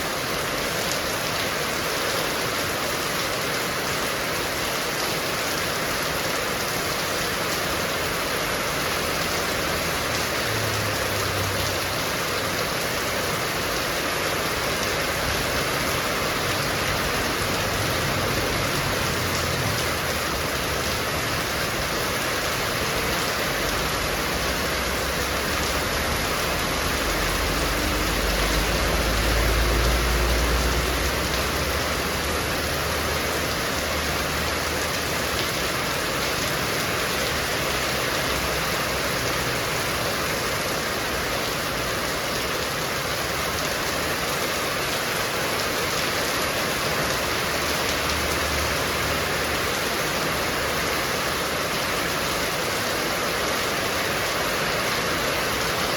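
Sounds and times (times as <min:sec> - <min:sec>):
heavy rain falling: 0:00.0 - 0:55.9.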